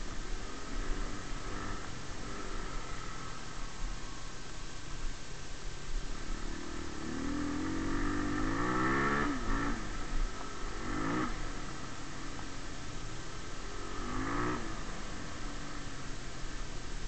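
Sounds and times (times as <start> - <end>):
motorcycle engine revving: 0.0 - 5.0, 5.8 - 17.0.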